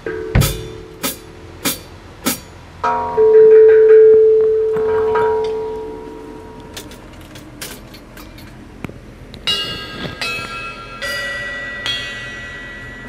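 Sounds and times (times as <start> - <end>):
ringing tone from struck object: 0.0 - 1.4, 2.4 - 6.6
bell-like ringing strikes: 0.1 - 1.4, 2.3 - 6.6, 9.5 - 13.0.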